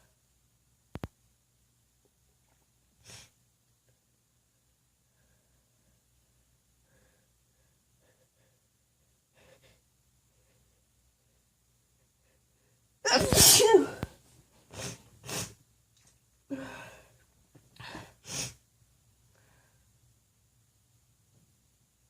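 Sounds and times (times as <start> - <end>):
woman sneezing: 13.1 - 14.1.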